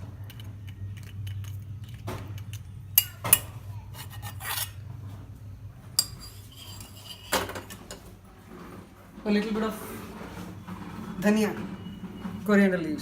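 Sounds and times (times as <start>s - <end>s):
metal spoon scraping a pot: 3.9s - 4.9s, 6.0s - 8.0s.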